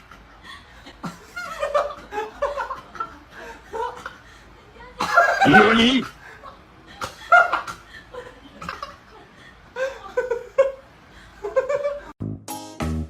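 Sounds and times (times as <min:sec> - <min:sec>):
person laughing: 0:05.0 - 0:10.8
music with steady beat: 0:12.2 - 0:13.0.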